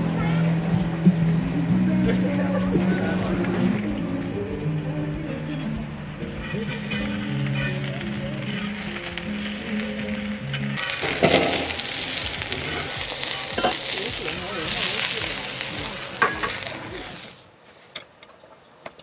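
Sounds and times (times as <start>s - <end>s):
food sizzling in a pan: 6.3s - 17.4s.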